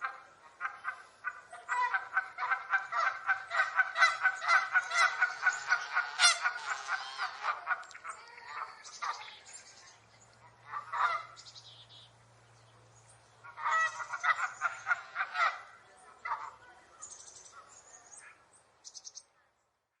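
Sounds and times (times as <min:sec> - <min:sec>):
geese honking: 0:00.0 - 0:09.3, 0:10.6 - 0:11.4, 0:13.4 - 0:16.6.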